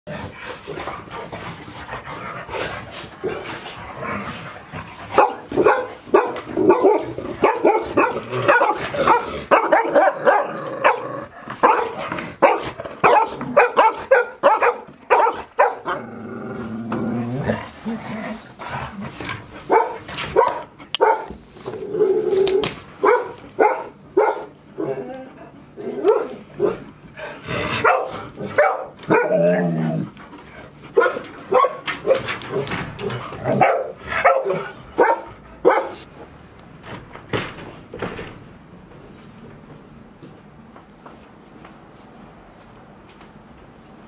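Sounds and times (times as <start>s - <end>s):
puppy growling: 15.8s - 19.6s, 29.2s - 30.2s.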